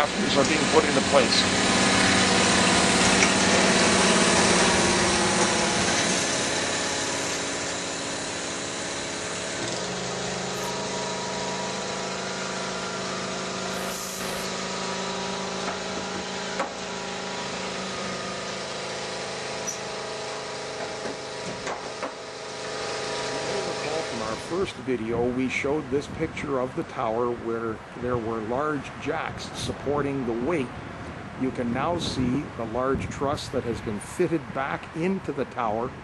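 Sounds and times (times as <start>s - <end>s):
machinery engine running: 0.0s - 21.4s, 22.2s - 25.3s.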